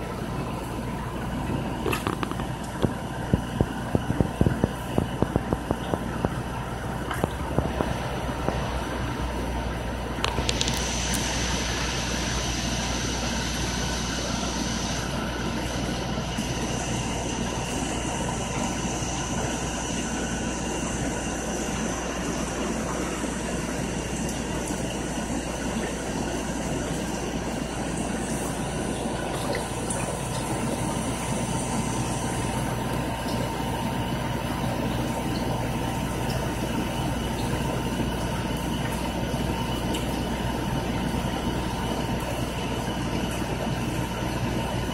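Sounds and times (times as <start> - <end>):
aquarium pumps humming: 0.0 - 44.9
running water: 16.4 - 44.9.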